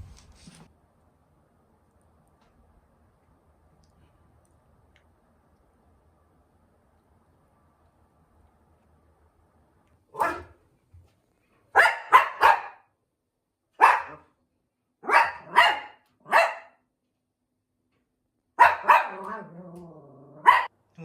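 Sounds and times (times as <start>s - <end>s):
small dog barking: 10.1s - 10.6s, 11.7s - 12.9s, 13.8s - 14.3s, 15.0s - 16.8s, 18.6s - 19.6s, 20.3s - 20.7s.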